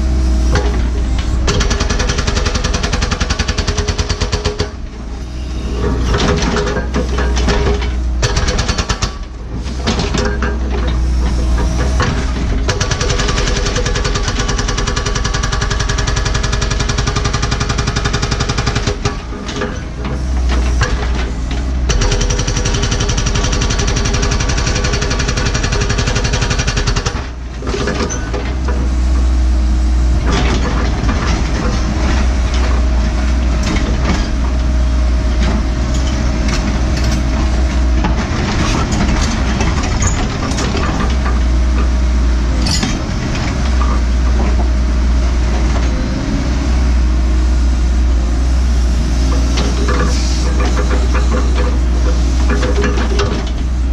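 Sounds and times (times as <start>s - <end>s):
excavator diesel engine under load: 0.0s - 53.9s
hydraulic hammer pounding rock: 0.4s - 4.9s, 5.7s - 29.0s, 35.4s - 44.7s, 49.3s - 53.9s.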